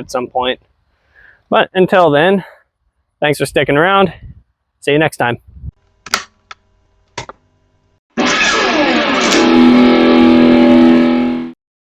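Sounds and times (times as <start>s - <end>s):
strummed guitar chord: 8.2s - 11.5s.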